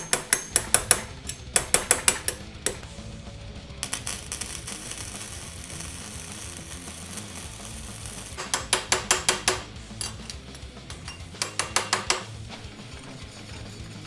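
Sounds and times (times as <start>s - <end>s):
sharp metallic taps: 0.0s - 2.9s, 8.4s - 12.4s
welder arc crackling: 0.0s - 3.0s, 3.7s - 13.1s.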